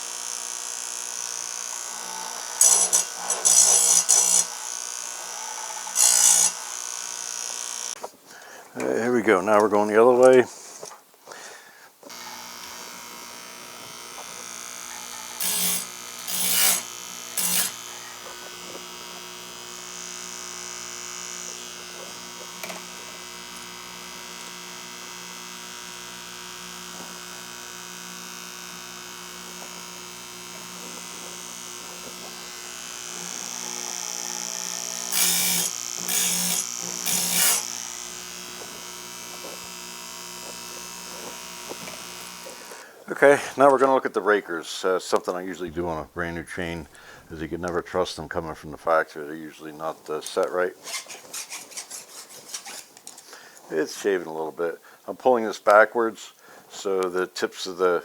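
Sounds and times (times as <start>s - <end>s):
grinder motor humming: 0.0s - 8.1s, 12.0s - 43.0s
wheel grinding chain tooth: 1.0s - 7.6s, 13.7s - 24.8s, 26.4s - 42.8s, 50.8s - 53.2s.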